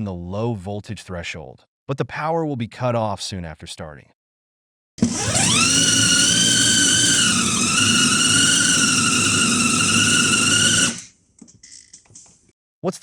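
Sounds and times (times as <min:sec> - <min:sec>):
small electric motor whining: 0:05.0 - 0:11.1.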